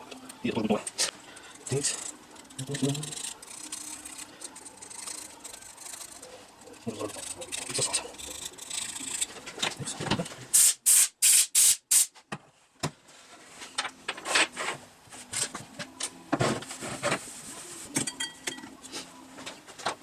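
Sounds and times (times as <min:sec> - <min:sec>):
hissing spray bursts: 0:10.6 - 0:12.1.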